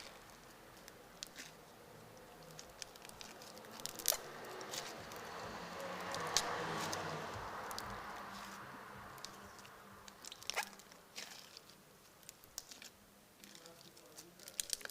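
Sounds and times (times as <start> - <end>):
slime squished by hand: 0.0 - 5.3, 9.2 - 14.9
traffic on nearby road: 0.0 - 14.9.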